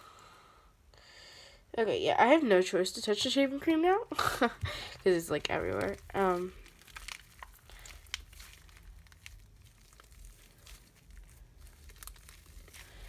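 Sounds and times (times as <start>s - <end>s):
slime crackling in hands: 4.6s - 13.0s.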